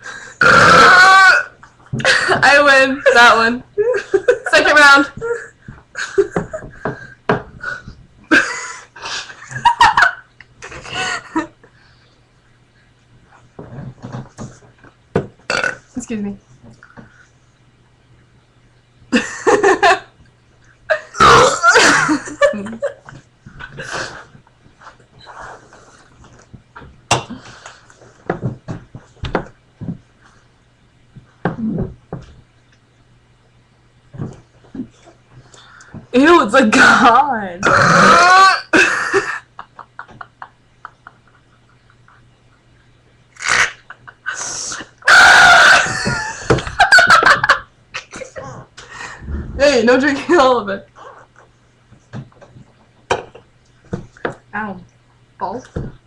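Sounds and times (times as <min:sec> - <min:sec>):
person burping: 0:00.4 - 0:01.5, 0:15.5 - 0:15.8, 0:21.2 - 0:21.7, 0:37.6 - 0:38.7
women belching: 0:00.4 - 0:01.6, 0:15.5 - 0:15.8, 0:21.1 - 0:22.1, 0:37.6 - 0:38.8
vocal noises: 0:49.2 - 0:49.8.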